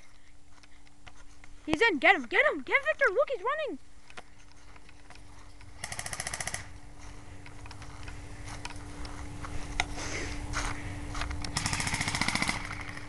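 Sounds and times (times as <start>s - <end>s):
airsoft gun burst: 5.8s - 6.7s, 11.5s - 13.0s.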